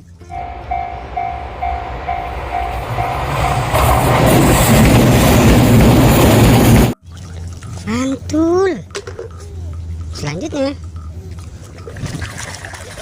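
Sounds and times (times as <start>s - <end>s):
train rumble: 0.0s - 7.0s
warning bell dinging: 0.3s - 4.4s.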